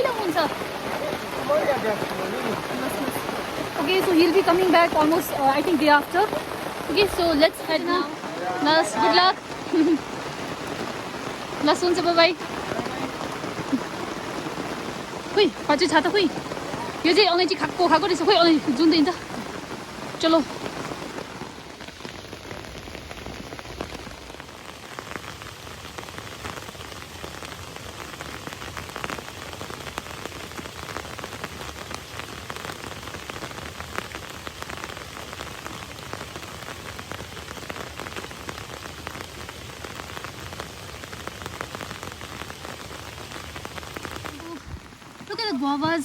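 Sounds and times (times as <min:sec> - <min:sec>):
steady rain: 0:00.0 - 0:46.0.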